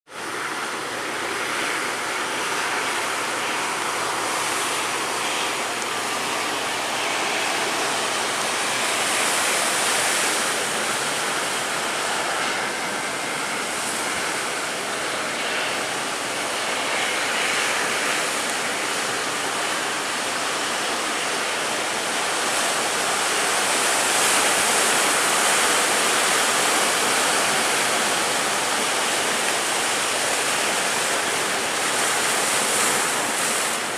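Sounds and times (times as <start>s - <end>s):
ocean waves breaking: 0.2s - 33.9s.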